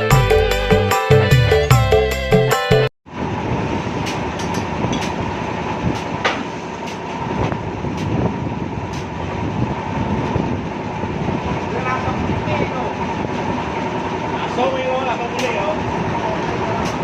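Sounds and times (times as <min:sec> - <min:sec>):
music: 0:00.0 - 0:02.9
diesel engine rumbling: 0:03.1 - 0:17.0.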